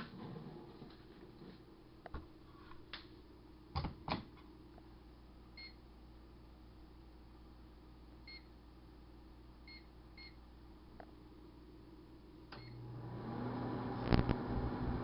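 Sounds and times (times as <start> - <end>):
microwave running hum: 0.0 - 15.0
microwave touch-pad beeps: 5.6 - 5.8, 8.3 - 8.5, 9.7 - 10.4, 12.6 - 12.8.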